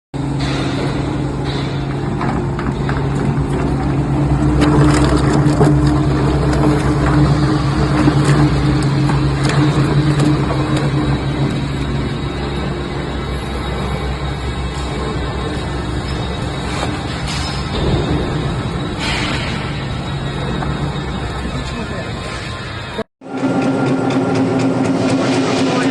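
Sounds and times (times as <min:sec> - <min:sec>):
grinder motor humming: 0:02.0 - 0:18.9.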